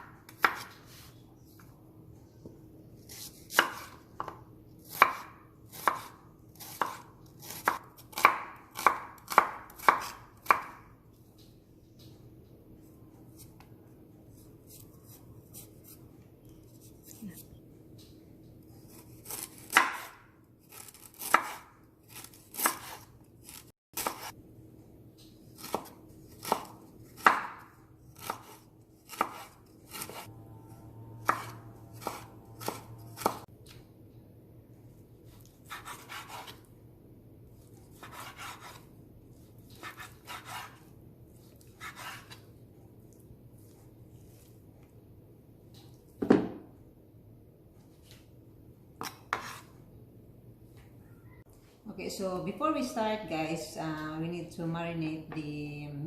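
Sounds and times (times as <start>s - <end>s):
knife chopping on cutting board: 0.0s - 0.8s, 3.1s - 10.9s, 18.8s - 24.4s, 25.6s - 30.3s, 31.2s - 33.5s, 35.6s - 36.6s, 37.7s - 38.9s, 39.8s - 40.9s, 41.6s - 42.4s, 49.0s - 49.7s.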